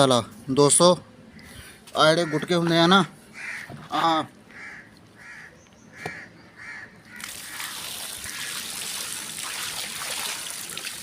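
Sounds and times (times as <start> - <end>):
crow cawing: 2.0 - 2.7, 3.3 - 8.7
water pouring onto wood: 7.2 - 11.0.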